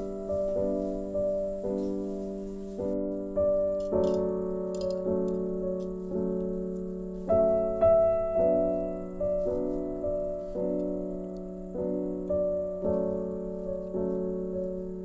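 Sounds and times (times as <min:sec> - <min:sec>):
slow soft piano music: 0:00.0 - 0:15.0.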